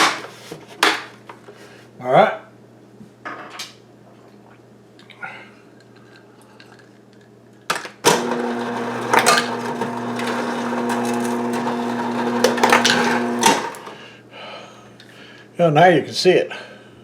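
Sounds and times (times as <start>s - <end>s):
ice dispenser motor running: 8.0s - 14.0s
ice clattering: 8.1s - 14.0s
ice dispenser switch click: 8.1s - 14.0s.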